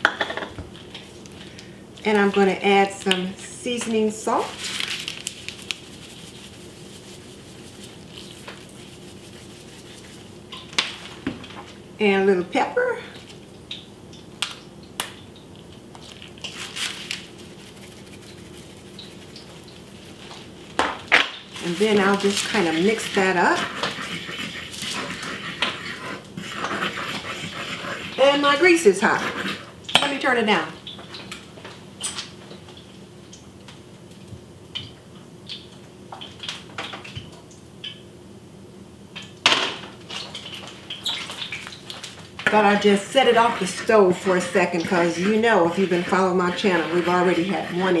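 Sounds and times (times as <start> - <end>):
steady low hum: 0.7 - 14.3, 42.2 - 48.0
pepper grinder rasping: 21.6 - 28.4, 42.4 - 48.0.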